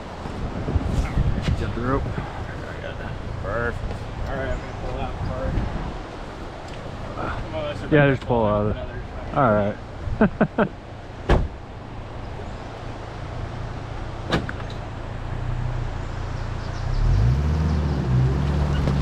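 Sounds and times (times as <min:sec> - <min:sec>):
sharp knocks: 0:11.3 - 0:11.6.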